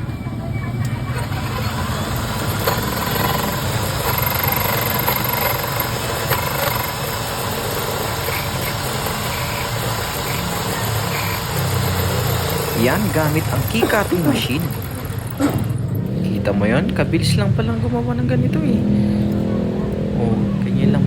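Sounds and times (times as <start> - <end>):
key-cutting machine humming: 0.4 - 16.2.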